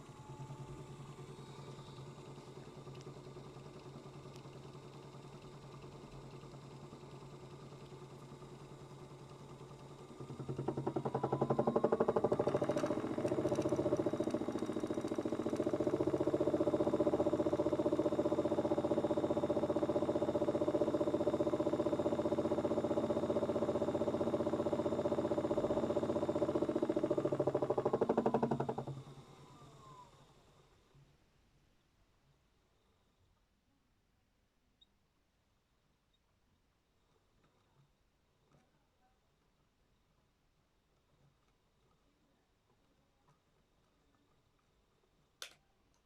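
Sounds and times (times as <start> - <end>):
drum rattling vibration: 0.0 - 29.2
toy washing machine spinning: 0.0 - 30.0.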